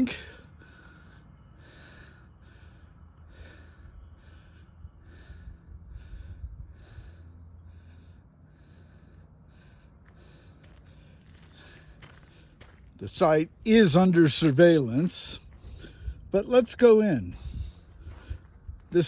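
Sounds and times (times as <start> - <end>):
person breathing hard: 0.0 - 13.0, 17.4 - 18.7.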